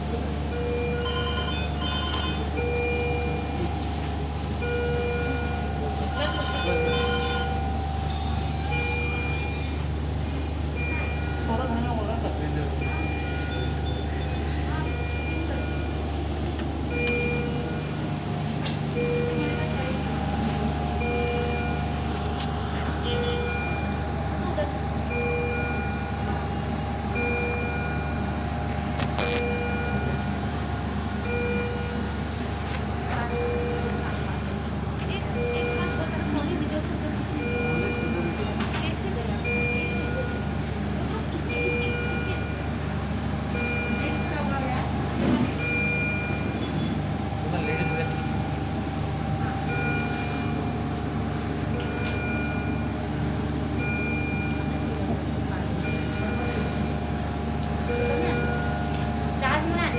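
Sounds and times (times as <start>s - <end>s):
medical alarm beeping: 0.0s - 59.9s
steady low hum: 0.0s - 59.9s.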